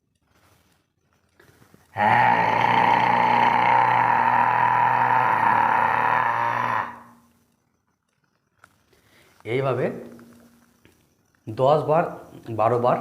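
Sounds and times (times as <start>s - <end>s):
person forcefully exhaling haaa: 2.0s - 7.2s.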